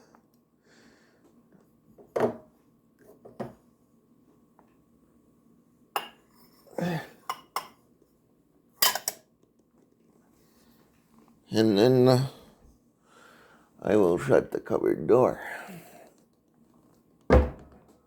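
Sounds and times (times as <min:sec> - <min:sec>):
bowl clinking against dishes: 0:08.8 - 0:09.2.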